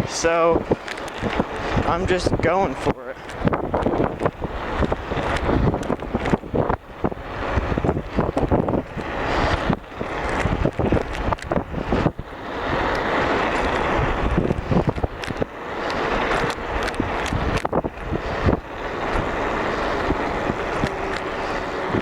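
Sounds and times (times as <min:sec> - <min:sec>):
bicycle tyres rolling on road: 0:00.0 - 0:22.0
wind buffeting microphone: 0:00.0 - 0:22.0.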